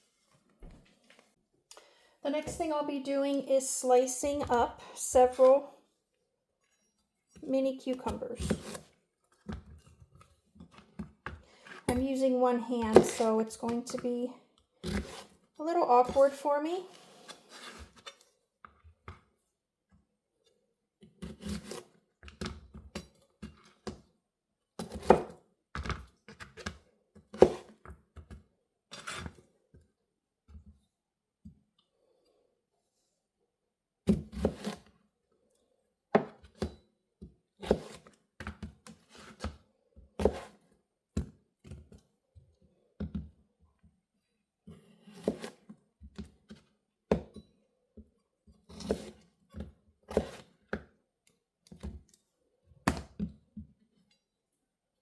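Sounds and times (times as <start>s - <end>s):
knife slicing cucumbers: 7.9s - 8.9s, 11.6s - 14.0s, 14.8s - 15.4s, 21.2s - 22.0s, 24.8s - 26.0s, 27.3s - 27.8s, 34.1s - 34.9s, 37.6s - 38.2s, 40.2s - 41.3s, 44.8s - 45.7s, 48.7s - 49.2s, 50.1s - 50.7s.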